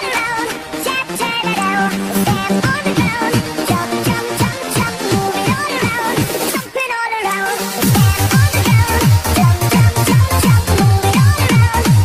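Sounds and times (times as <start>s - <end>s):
electronic dance music: 0.0s - 12.0s.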